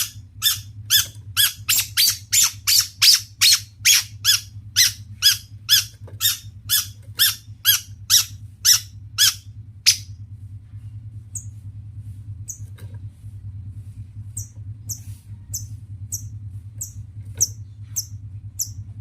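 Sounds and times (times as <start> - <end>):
bird harsh rasping calls: 0.0 - 10.1
steady low hum: 0.0 - 19.0.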